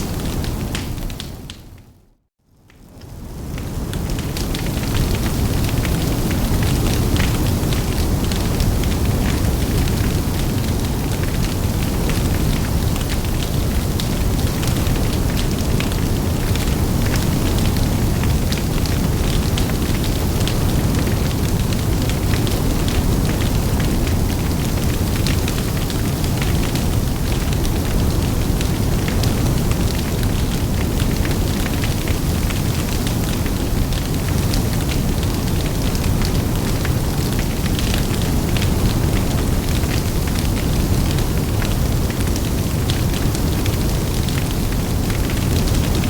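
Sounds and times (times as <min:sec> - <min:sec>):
fire crackling and rumbling: 0:00.0 - 0:46.0.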